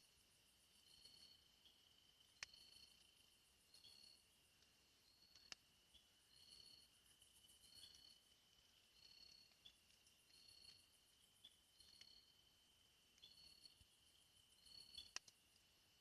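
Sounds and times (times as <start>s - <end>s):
insects chirping: 0.0s - 16.0s
sharp clicks: 14.8s - 15.4s.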